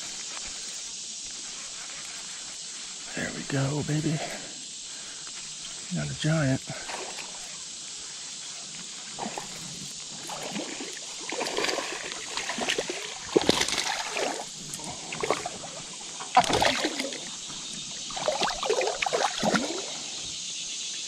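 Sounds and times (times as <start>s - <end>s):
creek water rushing: 2.9s - 20.3s
fish splashing in shallow water: 6.6s - 21.0s.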